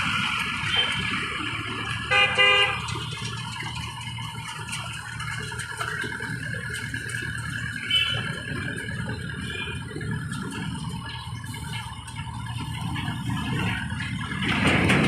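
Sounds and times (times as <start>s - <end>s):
low engine rumble: 0.0s - 15.0s
vehicle horn toots: 2.0s - 3.2s, 7.8s - 8.4s.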